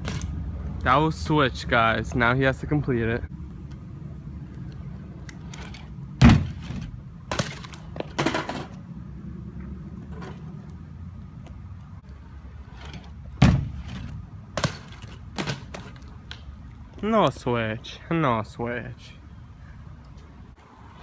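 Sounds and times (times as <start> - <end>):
bike impact thuds: 0.0 - 0.4, 5.5 - 8.8, 12.8 - 16.1
knocks and rattles: 5.6 - 8.8.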